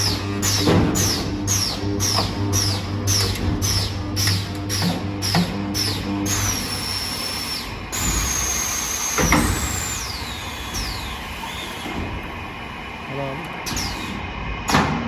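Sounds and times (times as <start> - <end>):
sharp machine thump: 0.0 - 7.2, 7.9 - 12.7
servo-like whines: 0.0 - 15.0.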